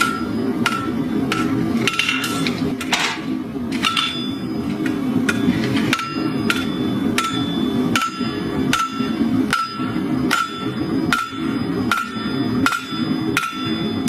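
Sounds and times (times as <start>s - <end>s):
anvil ringing: 0.0s - 2.5s, 3.8s - 4.6s, 5.2s - 14.0s
hammer striking anvil: 0.0s - 14.0s.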